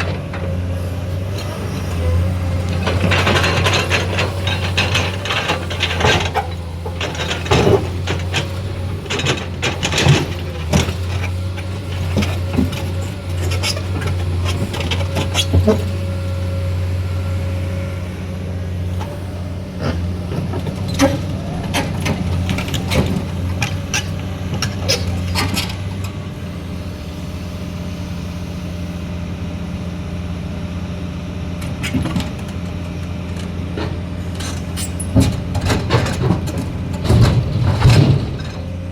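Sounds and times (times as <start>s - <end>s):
excavator diesel engine running: 0.0s - 38.9s
knocks and clanks: 2.7s - 15.9s, 19.8s - 25.8s, 33.8s - 38.7s.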